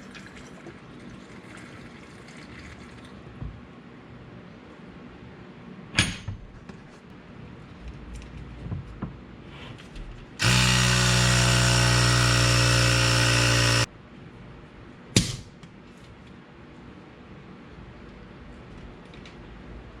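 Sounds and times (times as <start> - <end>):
electric power tool motor running: 10.4 - 13.9.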